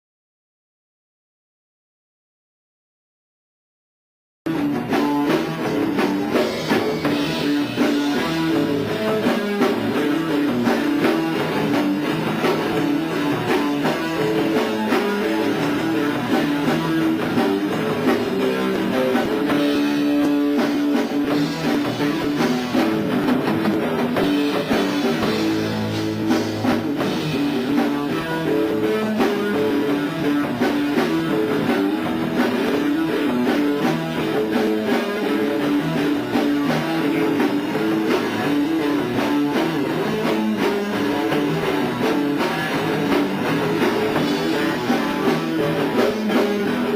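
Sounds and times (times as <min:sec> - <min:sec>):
bass guitar: 0:04.5 - 0:46.9
drum kit: 0:04.5 - 0:46.9
electric guitar: 0:04.5 - 0:46.9.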